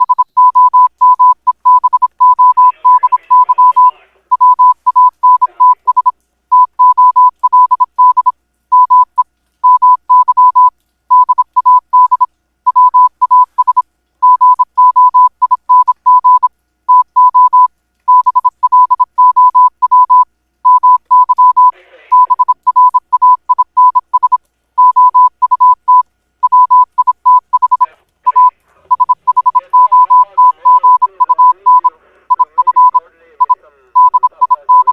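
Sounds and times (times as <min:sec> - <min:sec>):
morse code beeps: 0:00.0 - 0:34.9
faint voices: 0:27.8 - 0:34.9.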